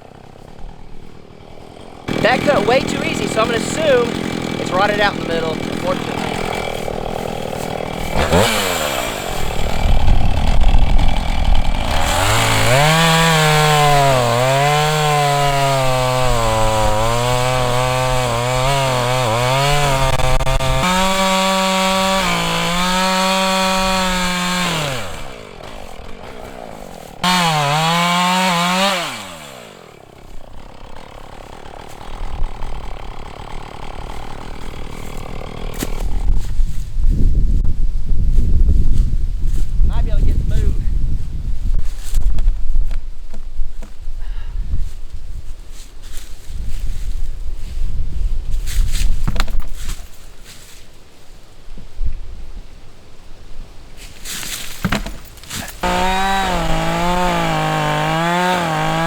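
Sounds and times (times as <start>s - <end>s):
chainsaw cutting through log: 0.0s - 37.6s, 54.4s - 59.0s.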